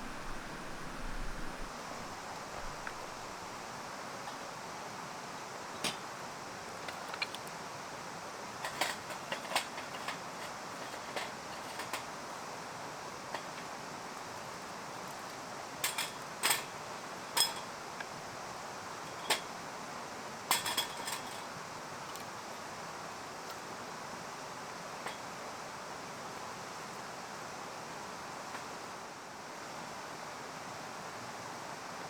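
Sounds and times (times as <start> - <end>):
low hiss: 0.0 - 9.1
metal camp gear clinking: 20.5 - 21.5.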